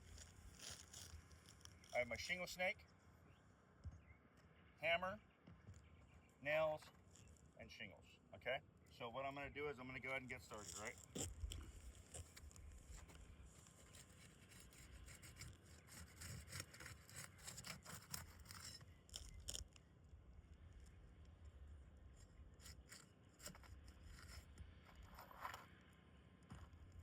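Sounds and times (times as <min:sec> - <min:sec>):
pry bar scraping roof shingles: 0:00.0 - 0:02.0, 0:10.5 - 0:19.8, 0:22.6 - 0:25.8.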